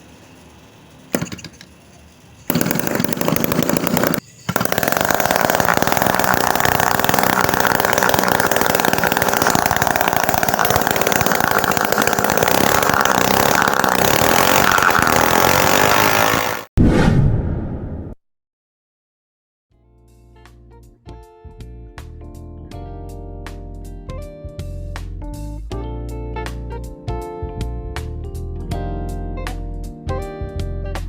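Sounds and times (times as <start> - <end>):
small two-stroke engine running: 0.4 - 16.7.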